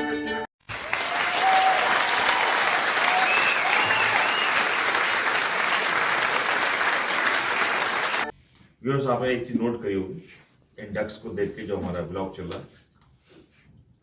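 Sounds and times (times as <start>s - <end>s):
crowd applause: 0.6s - 8.3s.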